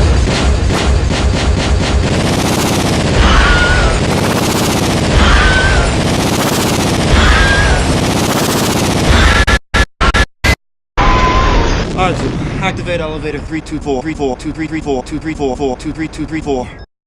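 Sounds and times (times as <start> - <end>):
distorted gunfire noise: 0.0 - 10.3
warbling sweep: 2.0 - 9.1.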